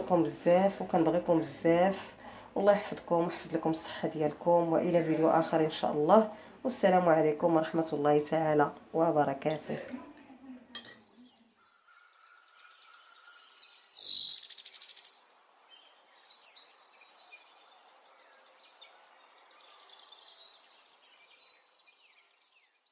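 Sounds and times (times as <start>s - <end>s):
small birds chirping: 9.5s - 22.9s.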